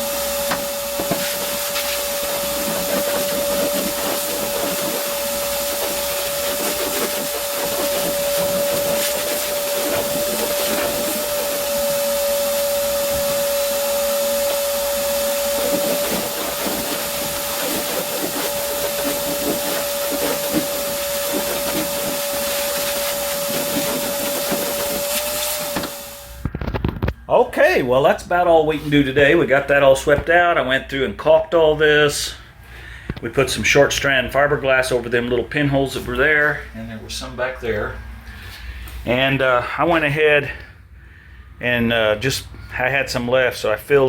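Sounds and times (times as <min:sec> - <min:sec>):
angle grinder grinding metal: 0:00.0 - 0:26.4.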